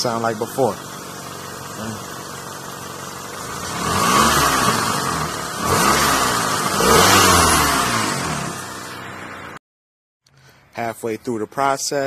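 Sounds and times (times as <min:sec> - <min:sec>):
car engine idling and revving: 0:00.0 - 0:09.6.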